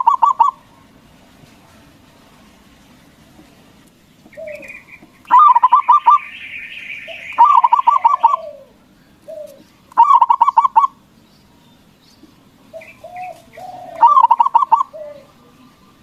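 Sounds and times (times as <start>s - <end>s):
dove cooing: 0.0s - 0.7s, 4.3s - 11.0s, 12.7s - 16.0s
high bird chirping: 4.1s - 16.0s.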